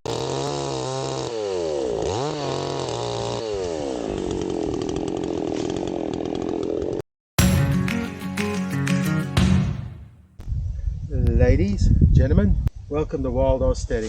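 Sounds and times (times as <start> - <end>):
chainsaw engine revving: 0.1 - 7.0.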